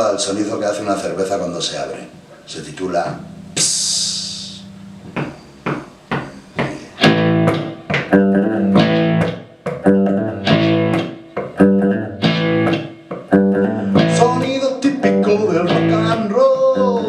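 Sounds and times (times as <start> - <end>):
rock guitar strummed chords: 3.0 - 5.2, 6.9 - 17.0.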